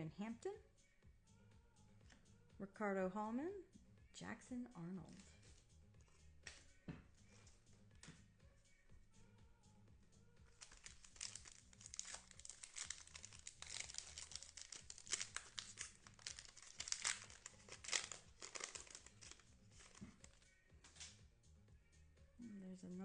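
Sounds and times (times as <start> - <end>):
foil wrapper crinkling: 10.5 - 20.4.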